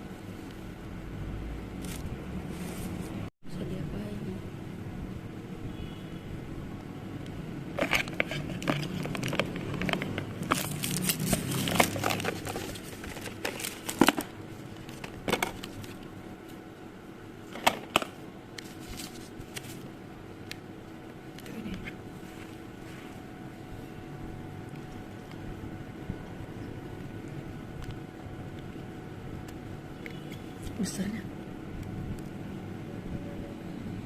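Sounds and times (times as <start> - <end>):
plastic packaging crinkling: 7.7 - 16.1, 17.6 - 19.9.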